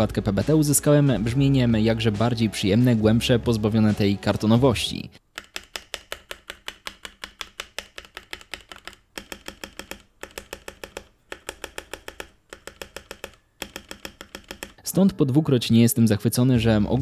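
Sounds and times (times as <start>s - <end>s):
mechanical keyboard keystrokes: 5.3s - 14.8s.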